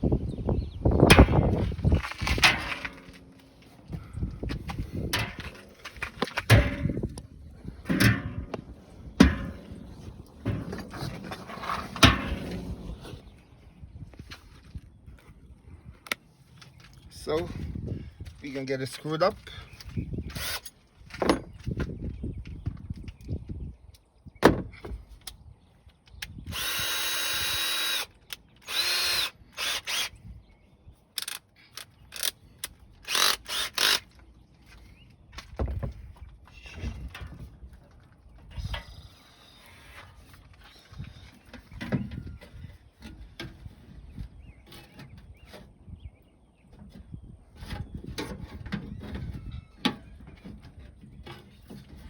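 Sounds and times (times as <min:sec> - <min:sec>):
power drill driving screws: 0:20.3 - 0:20.7, 0:26.5 - 0:30.2, 0:31.2 - 0:31.4, 0:32.1 - 0:32.4, 0:33.0 - 0:34.1.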